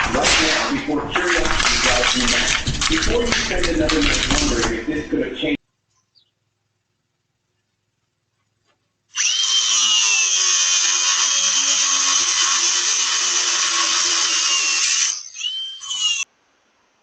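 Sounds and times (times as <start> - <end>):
power tool motor whining: 9.2 - 16.2.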